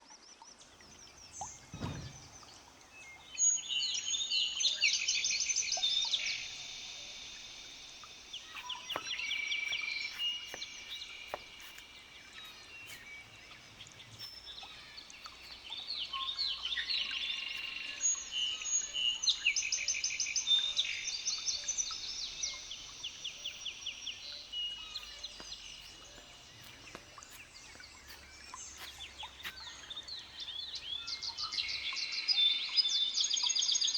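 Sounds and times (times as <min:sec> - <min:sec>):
birds trilling and chirping: 0:00.8 - 0:32.0
low thump: 0:00.9 - 0:03.3.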